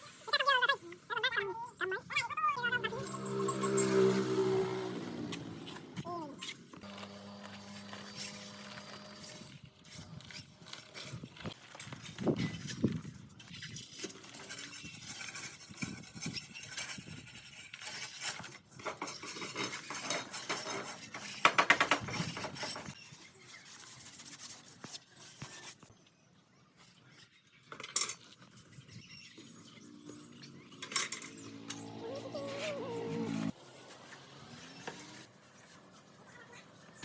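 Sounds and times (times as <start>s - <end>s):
trowel scraping on tile: 5.3s - 11.6s.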